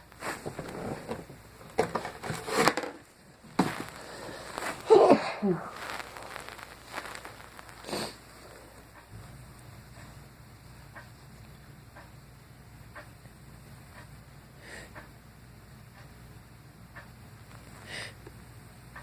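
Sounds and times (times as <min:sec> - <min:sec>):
person sneezing: 0:04.6 - 0:05.8.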